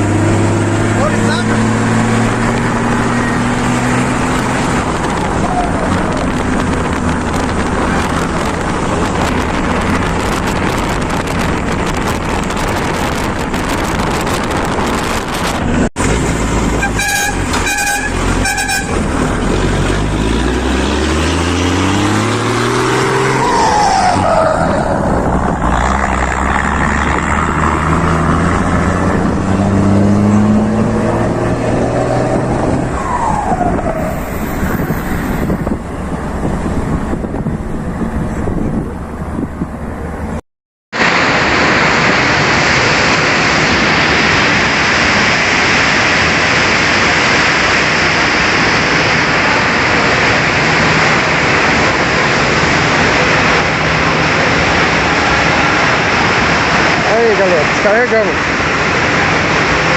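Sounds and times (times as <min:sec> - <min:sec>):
truck engine revving: 0:00.0 - 0:40.4, 0:41.0 - 0:59.9
road noise: 0:00.0 - 0:59.9
short horn toots: 0:16.8 - 0:19.0.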